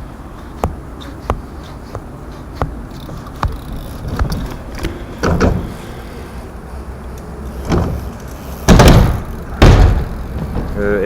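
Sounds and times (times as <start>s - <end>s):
bike rolling with clicks: 0.0s - 5.9s, 7.0s - 11.0s
bike landing thump: 0.5s - 5.8s, 7.6s - 11.0s.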